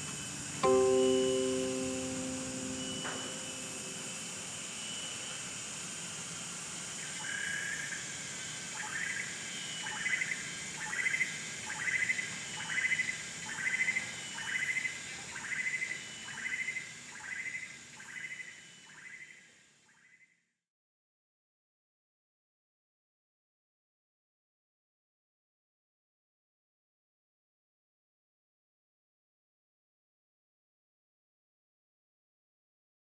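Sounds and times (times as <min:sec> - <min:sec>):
guqin note: 0:00.6 - 0:04.5
insect drone: 0:06.2 - 0:19.6.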